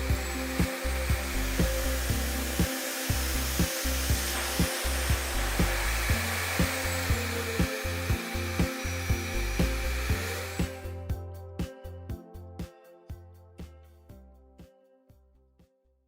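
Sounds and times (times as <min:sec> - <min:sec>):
vacuum cleaner running: 0:00.0 - 0:11.0
background music with beat: 0:00.0 - 0:15.7.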